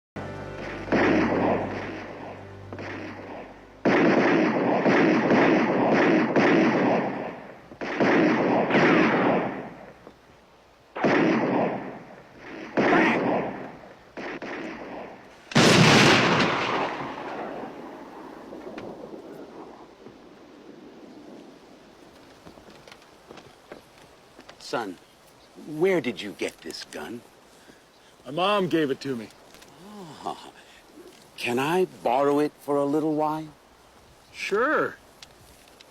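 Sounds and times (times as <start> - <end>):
heavy gunfire bursts: 0.6 - 2.1, 3.8 - 9.7, 14.2 - 17.5.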